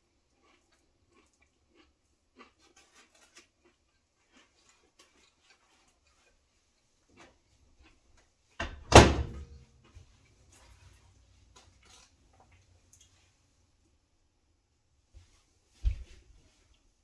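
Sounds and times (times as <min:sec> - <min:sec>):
door shutting thud: 0:08.6 - 0:09.4.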